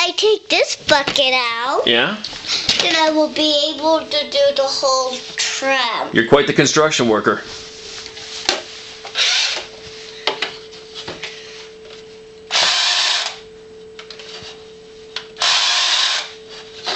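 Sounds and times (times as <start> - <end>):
electronic hum: 0.0 - 16.9
toy power tool buzzing: 9.1 - 9.8, 12.5 - 13.4, 15.4 - 16.9.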